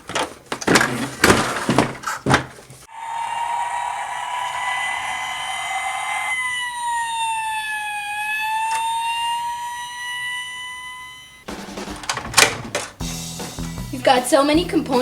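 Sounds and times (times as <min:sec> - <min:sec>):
toy electronic siren wailing: 0:02.9 - 0:11.5.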